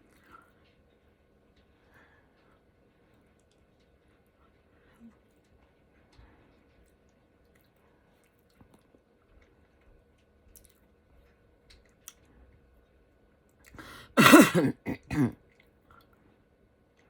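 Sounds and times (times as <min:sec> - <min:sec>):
person burping: 0:14.2 - 0:15.4.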